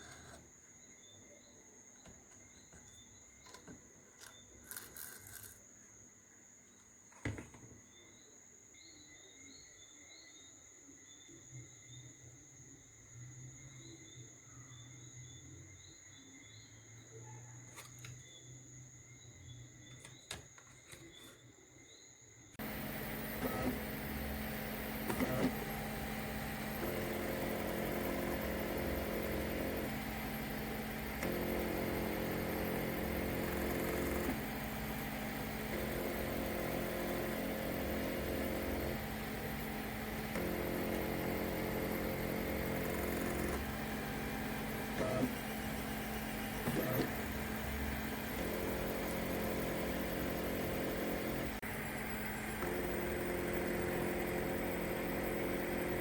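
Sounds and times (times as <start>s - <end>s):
stepper motors whining: 22.6s - 56.0s.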